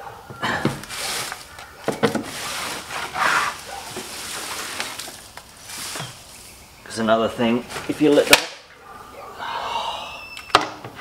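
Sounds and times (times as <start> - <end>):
hay rustling and scraping: 0.8 - 6.8.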